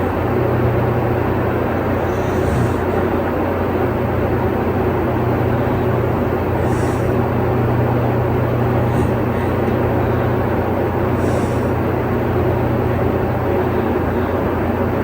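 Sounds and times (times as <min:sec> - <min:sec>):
mechanical drone with low hum: 0:00.0 - 0:15.0
short hisses: 0:02.0 - 0:03.1, 0:06.6 - 0:07.3, 0:08.8 - 0:09.7, 0:11.2 - 0:11.8.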